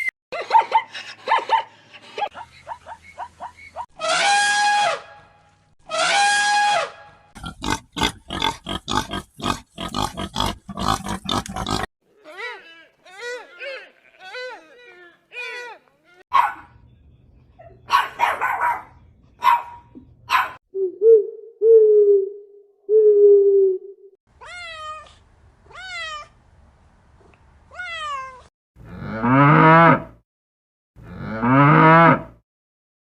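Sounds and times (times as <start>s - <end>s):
cow mooing: 31.0s - 32.4s.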